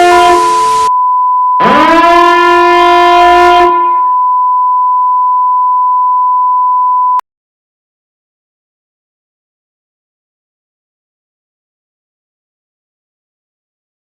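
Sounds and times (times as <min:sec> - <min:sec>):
blaring horn-like tone: 0:00.0 - 0:00.9, 0:01.6 - 0:04.2
steady high electronic tone: 0:00.0 - 0:00.9.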